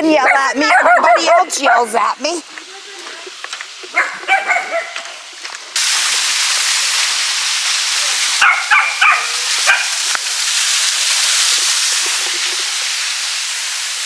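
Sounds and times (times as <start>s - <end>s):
young dog barking: 0.1s - 2.0s, 3.9s - 5.1s, 8.4s - 10.0s
steady rushing hiss: 1.4s - 14.0s.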